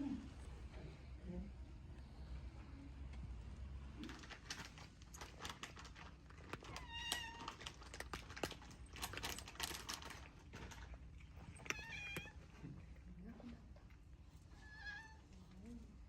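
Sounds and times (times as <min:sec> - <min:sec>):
light clicks and rustling: 0:04.0 - 0:14.0
cat meowing: 0:06.7 - 0:07.6, 0:11.6 - 0:12.5, 0:14.5 - 0:15.3.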